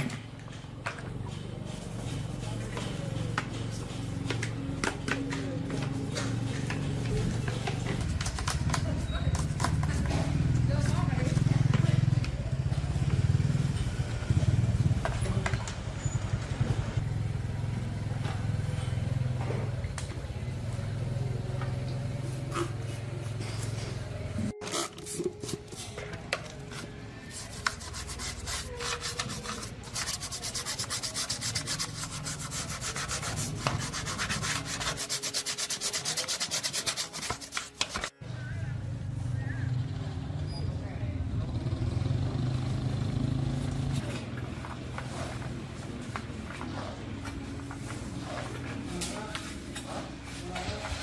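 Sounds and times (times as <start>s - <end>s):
sanding scraping: 1.6s - 4.5s, 5.7s - 11.4s, 27.3s - 38.1s, 42.5s - 46.8s.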